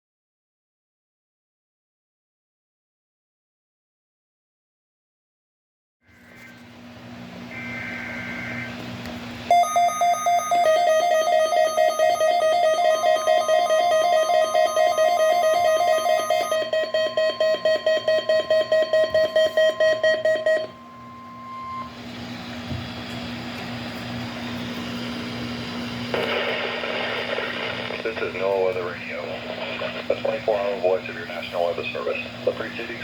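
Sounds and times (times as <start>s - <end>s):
low radio hum: 6.1s - 8.9s, 23.1s - 33.0s
pulsing electronic alarm beeps: 7.5s - 8.8s, 9.5s - 22.0s
steady warning alarm tone: 7.5s - 8.8s, 9.5s - 22.4s
two-tone data warble: 7.5s - 8.8s, 9.5s - 21.9s, 26.1s - 28.6s.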